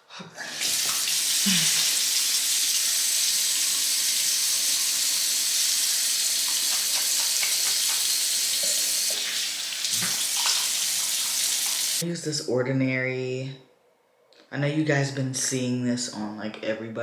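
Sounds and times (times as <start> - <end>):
tap water running into sink: 0.4 - 12.0.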